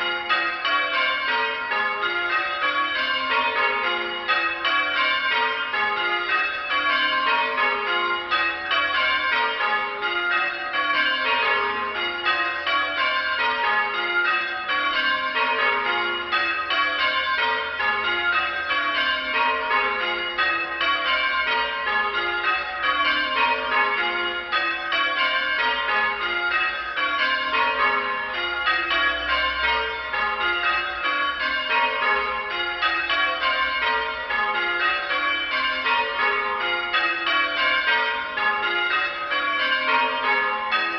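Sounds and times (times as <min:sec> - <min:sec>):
church bells change-ringing: 0:00.0 - 0:40.9.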